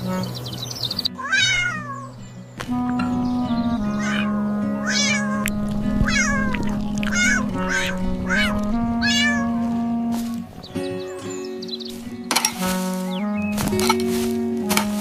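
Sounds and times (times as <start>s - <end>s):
background music with held notes: 0.0s - 15.0s
kittens mewing: 1.2s - 2.1s, 4.0s - 10.3s.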